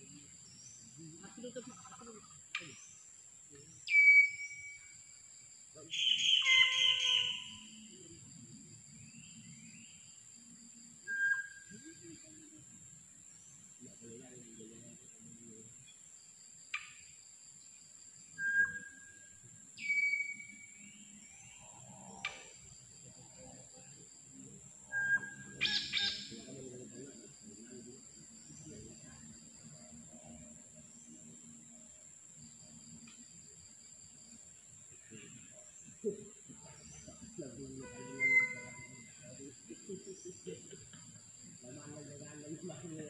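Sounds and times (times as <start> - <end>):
high insect drone: 0.0 - 43.0
birds whistling calls: 3.8 - 5.0, 5.9 - 7.9, 11.1 - 11.8, 18.4 - 19.1, 19.8 - 21.0, 24.9 - 26.5, 37.7 - 39.3.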